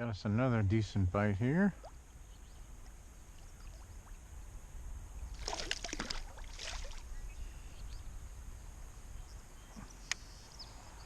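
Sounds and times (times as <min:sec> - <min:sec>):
fish splashing at water surface: 0:05.4 - 0:07.0.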